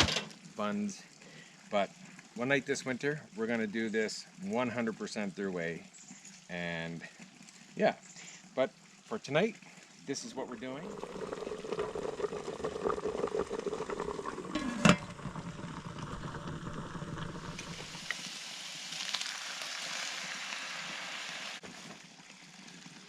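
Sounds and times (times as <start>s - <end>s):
food sizzling in a pan: 16.7s - 21.9s.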